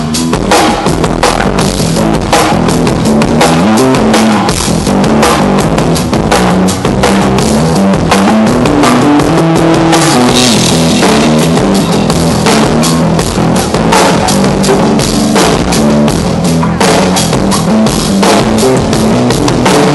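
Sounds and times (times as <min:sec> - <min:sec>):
bass line: 0:00.0 - 0:19.9
drum kit beat: 0:00.0 - 0:19.9
guitar: 0:00.0 - 0:19.9.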